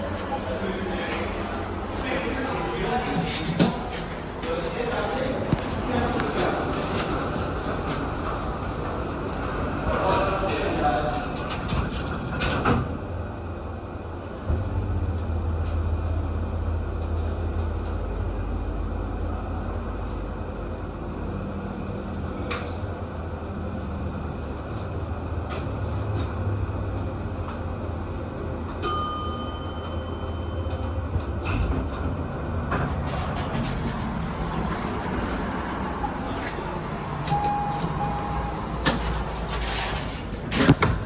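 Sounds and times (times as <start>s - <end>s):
elevator low hum: 0.0s - 41.0s
elevator chime: 28.8s - 31.9s, 32.9s - 40.3s.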